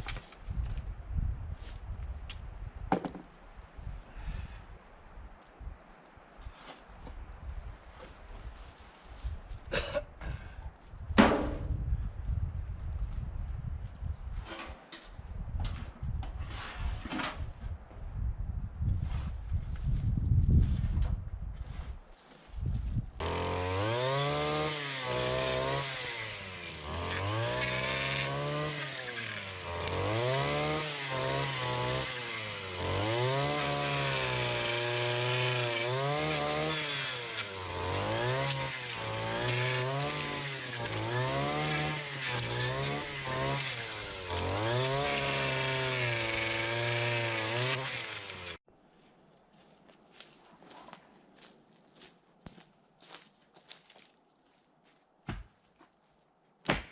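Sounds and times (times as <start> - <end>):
petrol saw cutting wood: 23.2 - 48.6.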